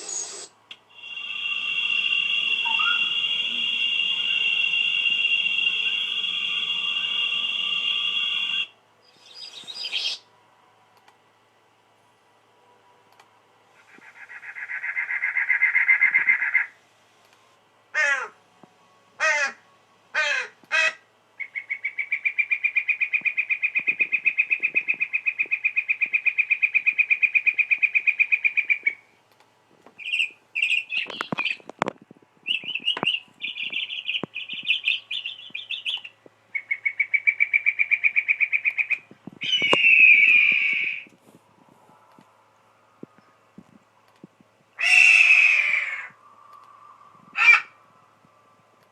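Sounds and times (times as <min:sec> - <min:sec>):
buzzy bird call: 0:00.0 - 0:10.2, 0:30.0 - 0:31.6, 0:32.5 - 0:41.1
bird chirps: 0:01.0 - 0:10.2, 0:21.4 - 0:29.1, 0:30.0 - 0:31.7, 0:32.4 - 0:41.1
quick falling bird whistles: 0:01.4 - 0:10.2, 0:38.6 - 0:41.1
harsh caw: 0:18.0 - 0:18.4, 0:19.2 - 0:19.6, 0:20.2 - 0:21.0, 0:44.8 - 0:46.2, 0:47.4 - 0:47.8
rapid rattling bird call: 0:20.2 - 0:29.0, 0:30.0 - 0:31.6, 0:32.4 - 0:41.0.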